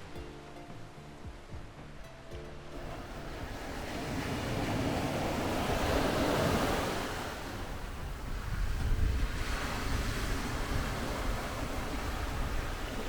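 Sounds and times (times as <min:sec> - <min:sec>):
sea surf washing onto beach: 0:02.8 - 0:13.0
wind rumbling on microphone: 0:02.8 - 0:13.0.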